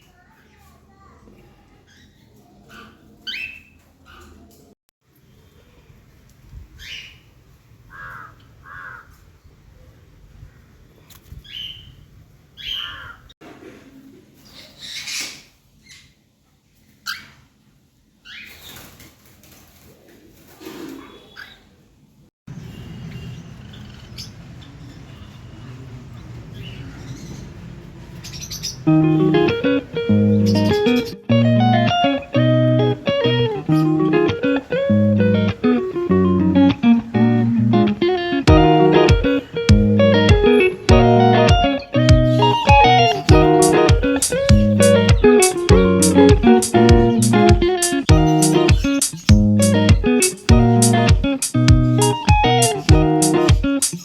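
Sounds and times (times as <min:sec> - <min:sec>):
parrots calling: 0:28.2 - 0:31.2, 0:38.0 - 0:54.0.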